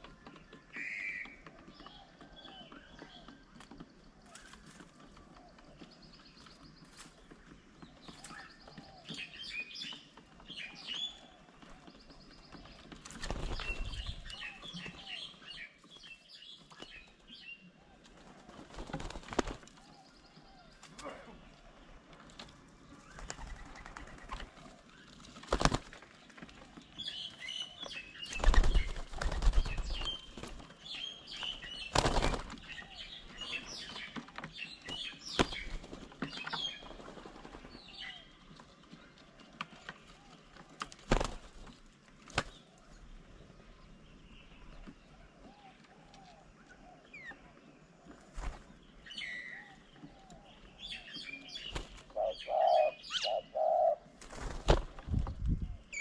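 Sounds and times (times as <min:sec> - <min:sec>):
small birds chirping: 0:00.0 - 0:56.0
birds flapping wings: 0:11.2 - 0:15.0, 0:17.9 - 0:20.0, 0:20.8 - 0:27.0, 0:27.8 - 0:37.9, 0:39.6 - 0:42.7, 0:48.2 - 0:48.8, 0:51.7 - 0:52.2, 0:54.2 - 0:55.6.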